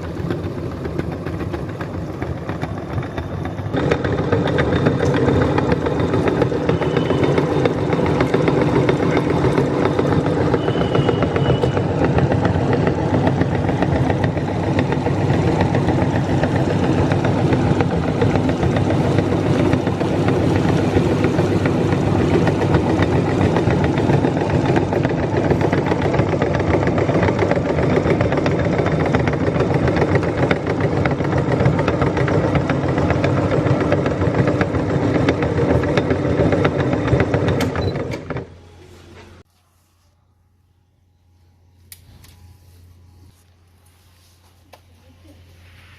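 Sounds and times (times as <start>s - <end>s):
meat grinder grinding: 0.0s - 38.5s.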